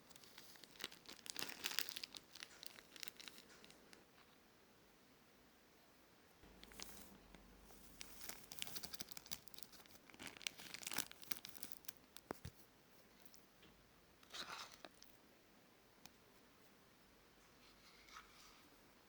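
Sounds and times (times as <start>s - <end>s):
crinkling and tearing: 0.0s - 3.8s, 6.5s - 12.6s, 14.2s - 15.2s.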